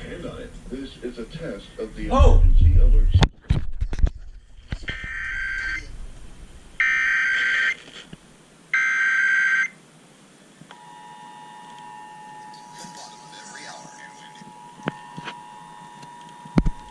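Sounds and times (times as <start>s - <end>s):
warbling digital data tones: 4.9s - 6.0s, 12.4s - 14.8s.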